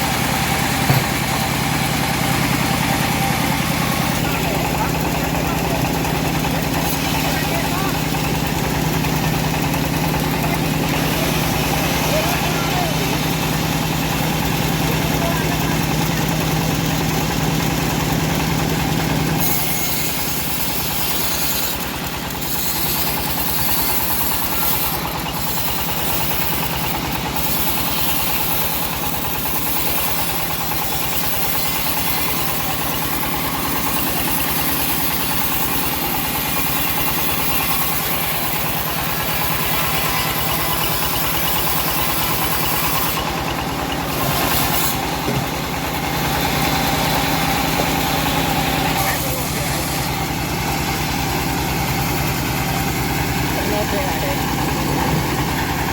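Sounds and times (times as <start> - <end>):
sawmill engine running: 0.0 - 55.9
saw blade cutting wood hiss: 19.4 - 45.2.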